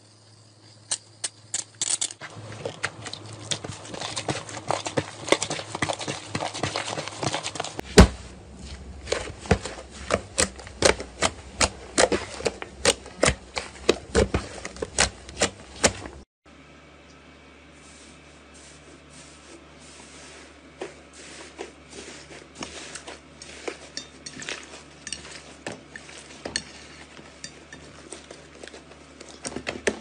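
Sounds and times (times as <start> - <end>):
thump: 7.9 - 8.2.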